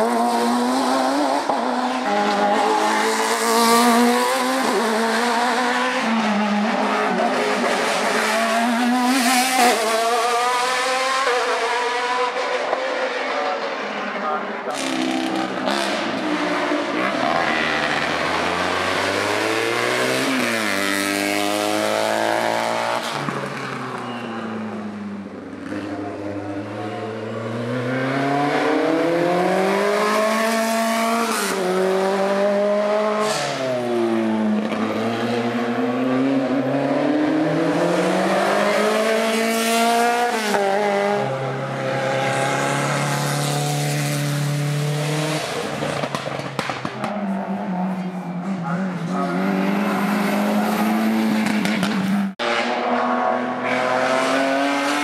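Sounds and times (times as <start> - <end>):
race car engine at full throttle: 0.0 - 55.0.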